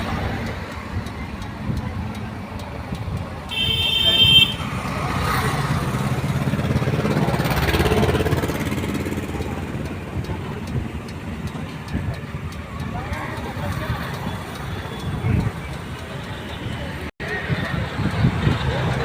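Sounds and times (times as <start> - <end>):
roadside traffic: 0.0 - 19.0
vehicle engine: 0.0 - 19.0
vehicle horn honking: 3.5 - 4.7.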